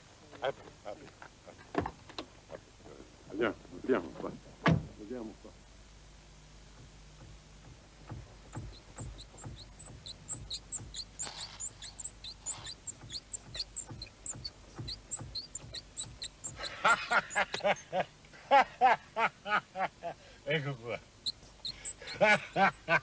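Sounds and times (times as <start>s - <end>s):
car squeaking rhythmically: 7.2s - 17.8s, 21.2s - 23.0s.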